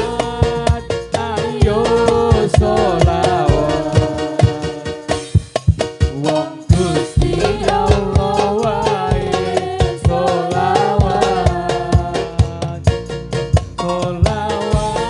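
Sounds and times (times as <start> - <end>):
person singing wavering melody: 0.0 - 5.2
frame drum strikes: 0.0 - 15.0
instrumental accompaniment: 0.0 - 15.0.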